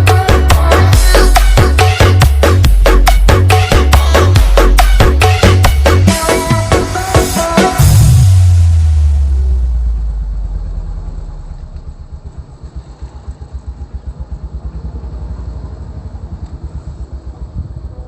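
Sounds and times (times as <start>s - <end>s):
sound system music: 0.0s - 14.9s
large engine idling: 8.7s - 18.0s.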